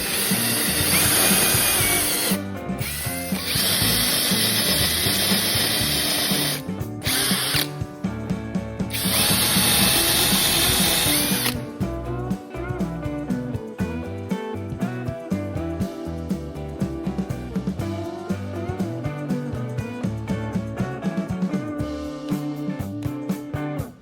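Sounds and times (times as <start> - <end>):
electric power tool running: 0.0 - 7.8, 8.9 - 11.6
background music: 0.0 - 24.0.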